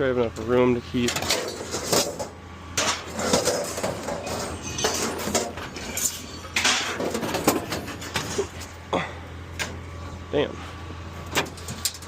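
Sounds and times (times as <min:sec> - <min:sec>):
scrap metal clattering and scraping: 0:01.0 - 0:08.8, 0:10.6 - 0:12.0.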